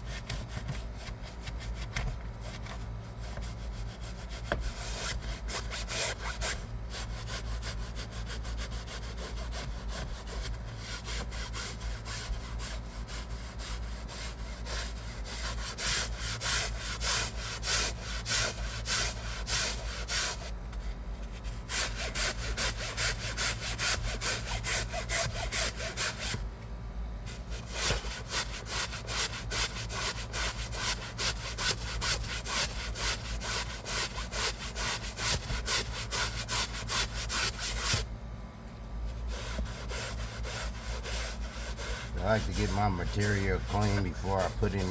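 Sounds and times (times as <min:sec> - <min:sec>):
brush scrubbing fabric seat: 0:39.3 - 0:44.9.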